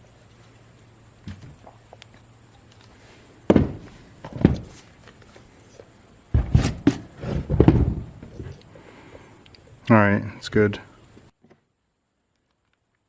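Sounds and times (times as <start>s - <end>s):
heavy knocks and thuds: 3.5s - 4.8s, 6.3s - 8.5s.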